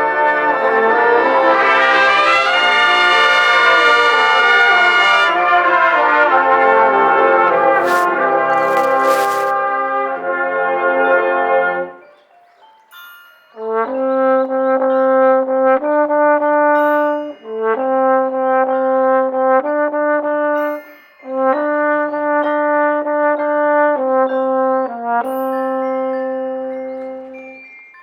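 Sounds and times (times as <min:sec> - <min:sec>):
brass band playing slow ballad: 0:00.0 - 0:11.9.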